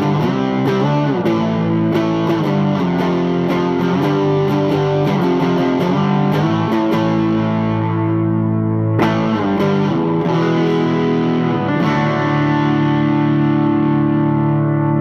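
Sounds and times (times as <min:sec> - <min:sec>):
electric guitar chords: 0:00.0 - 0:15.0.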